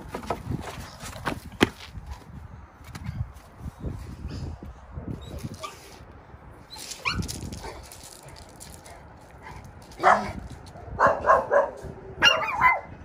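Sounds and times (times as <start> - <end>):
dog barking: 10.0 - 10.4, 11.0 - 13.0.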